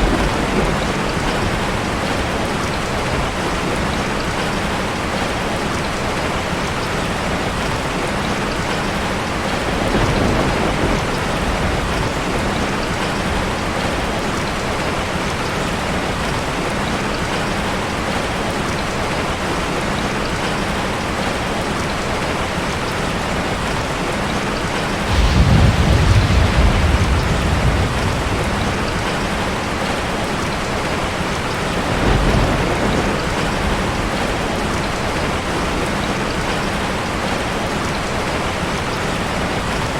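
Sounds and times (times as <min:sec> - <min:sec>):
thunder rumbling: 0:00.0 - 0:04.8, 0:09.4 - 0:15.0, 0:24.5 - 0:37.2
steady rain: 0:00.0 - 0:39.9.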